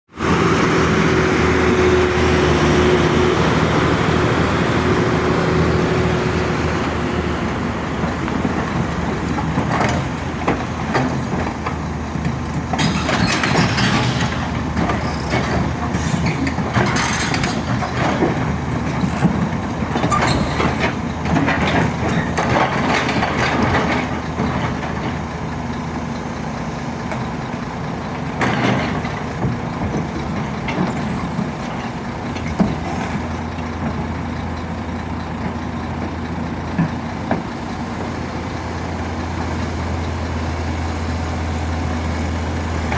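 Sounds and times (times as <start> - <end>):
diesel engine running: 0.1 - 42.9
metal clanks and scrapes: 9.3 - 25.1, 30.3 - 34.1.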